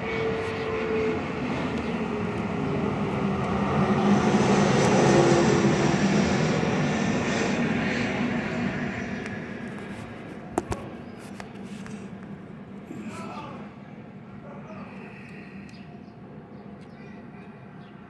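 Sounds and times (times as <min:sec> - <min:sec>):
engine passing by: 0:00.0 - 0:10.2.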